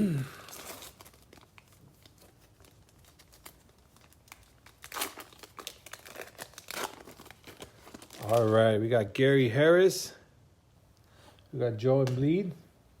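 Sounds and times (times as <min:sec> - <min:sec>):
card pack wrapper crinkling: 0:00.4 - 0:08.7.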